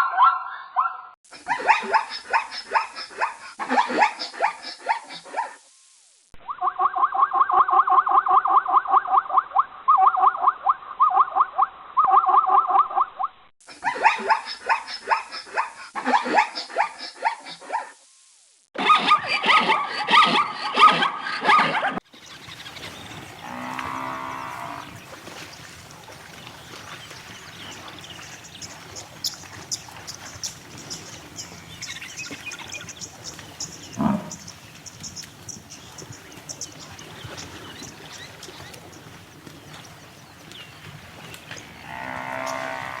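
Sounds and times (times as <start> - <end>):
animal barking calls: 0.0 - 5.6, 6.5 - 18.0, 18.8 - 22.0, 23.1 - 36.8, 41.6 - 43.0
low drawn-out animal call: 23.2 - 25.0, 33.8 - 34.5, 41.6 - 43.0.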